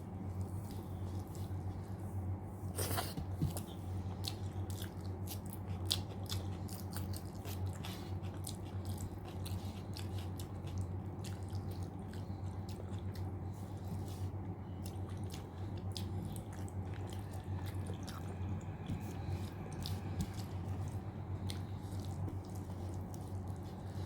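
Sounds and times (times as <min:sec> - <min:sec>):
chewing food: 0:00.2 - 0:02.1, 0:02.8 - 0:24.0
low hum: 0:12.0 - 0:24.0.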